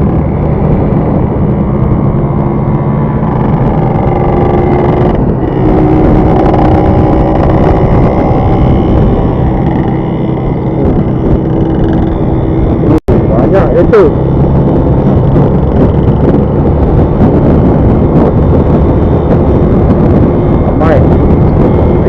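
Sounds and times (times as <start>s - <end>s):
road noise: 0.0s - 22.0s
vehicle engine running: 0.0s - 22.0s.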